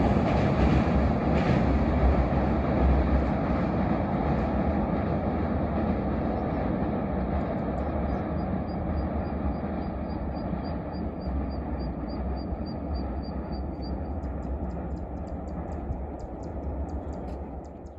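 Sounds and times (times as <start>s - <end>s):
train rumbling past: 0.0s - 17.9s
faint clicks: 14.2s - 17.9s.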